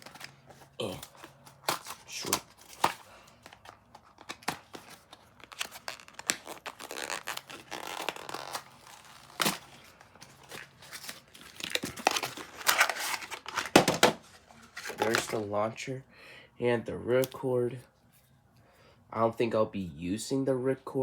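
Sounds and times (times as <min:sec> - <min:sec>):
cardboard and plastic tearing: 0:00.0 - 0:15.5.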